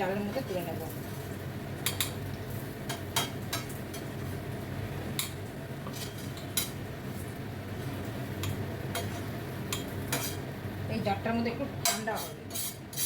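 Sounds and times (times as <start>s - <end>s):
steady low hum: 0.0s - 12.9s
utensil scraping a pan: 5.8s - 6.8s, 8.9s - 10.5s, 11.9s - 13.0s.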